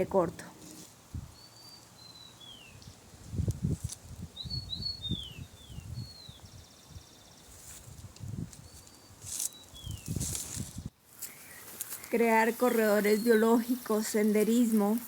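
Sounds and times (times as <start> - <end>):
songbird whistling: 4.4 - 6.7.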